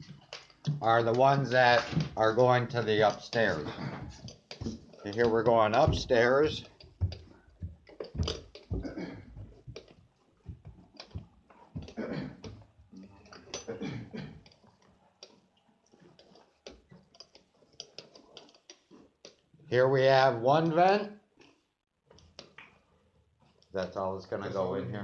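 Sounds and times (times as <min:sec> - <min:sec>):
footsteps climbing stairs: 0:00.0 - 0:14.7.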